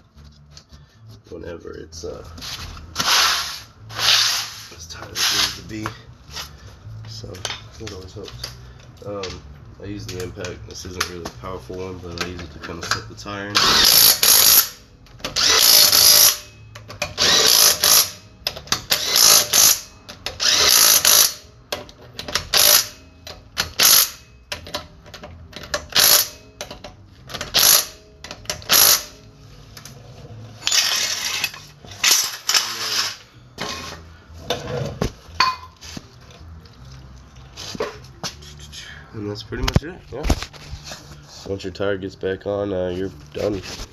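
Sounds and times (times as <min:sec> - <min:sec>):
impact wrench hammering: 0:13.8 - 0:21.4, 0:22.3 - 0:24.8, 0:25.7 - 0:26.8, 0:27.4 - 0:29.2.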